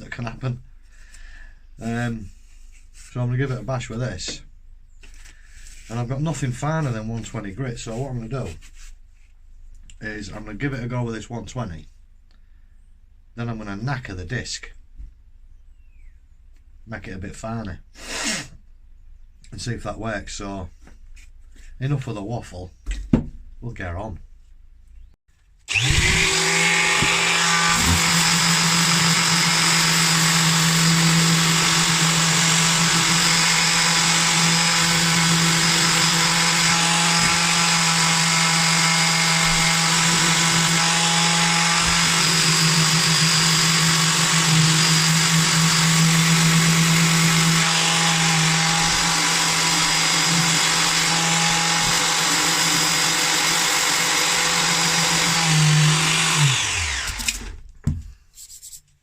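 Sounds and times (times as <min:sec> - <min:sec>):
electric sander grinding steel: 0:25.7 - 0:57.4.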